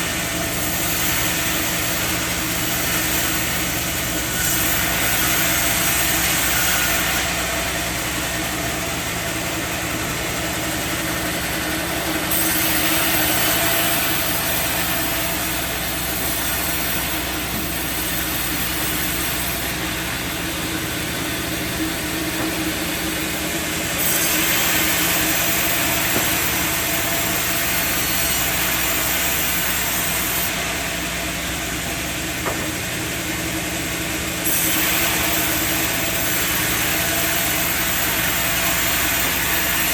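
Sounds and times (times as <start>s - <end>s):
sawmill machinery humming and hissing: 0.0s - 39.9s.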